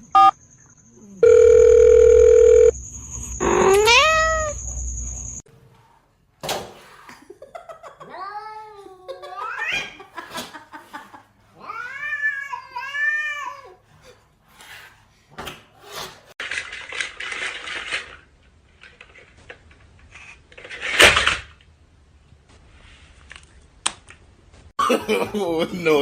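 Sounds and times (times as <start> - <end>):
cat meowing: 3.6 - 4.6.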